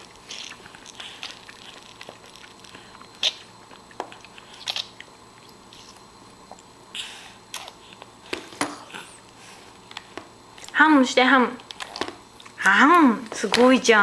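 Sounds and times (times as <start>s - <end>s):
crisp crunching bites: 0.1s - 4.9s.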